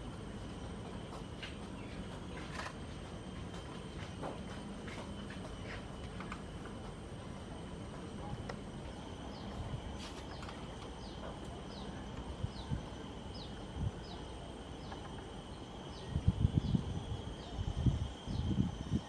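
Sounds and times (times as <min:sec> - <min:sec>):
high-pitched insect hum: 0:05.0 - 0:19.0.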